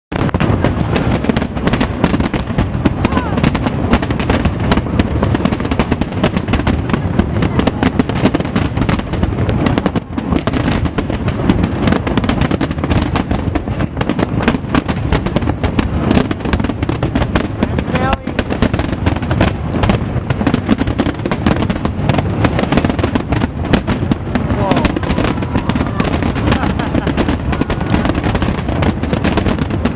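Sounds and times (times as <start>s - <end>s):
fireworks bangs and crackles: 0.1s - 29.9s
low rumble: 13.4s - 29.9s.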